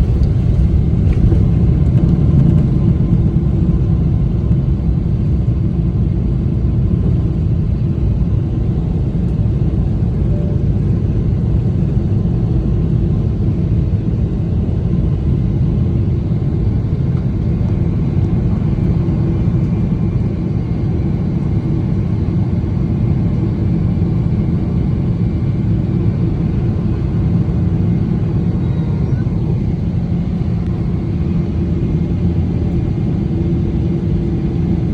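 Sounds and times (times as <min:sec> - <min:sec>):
jet engines at take-off thrust: 0:00.0 - 0:34.9.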